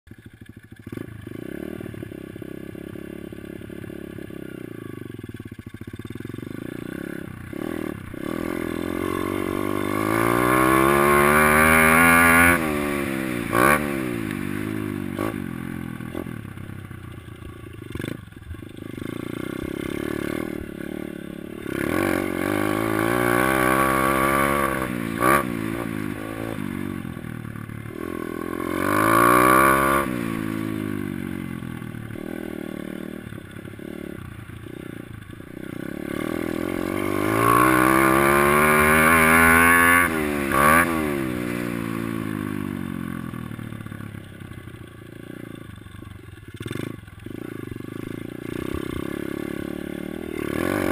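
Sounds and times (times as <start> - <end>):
dirt bike engine revving: 0.2 - 44.3, 46.5 - 50.9.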